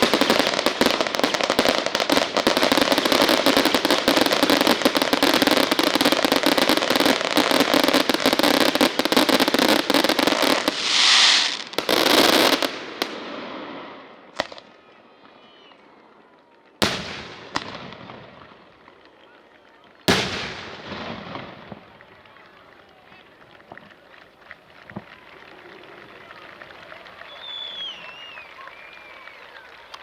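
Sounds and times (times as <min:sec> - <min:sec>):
fireworks hissing bursts: 0:00.0 - 0:13.4
fireworks crackling bangs: 0:00.0 - 0:14.8, 0:16.8 - 0:28.0
sharp firework bangs: 0:08.4 - 0:14.6.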